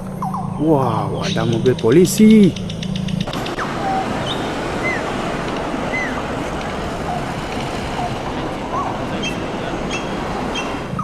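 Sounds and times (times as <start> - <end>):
steady rushing noise: 3.2 - 11.0.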